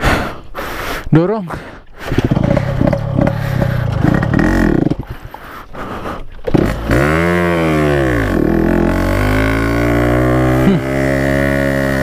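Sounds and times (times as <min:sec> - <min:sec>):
motorcycle engine revving: 0:02.1 - 0:05.1, 0:06.5 - 0:12.0.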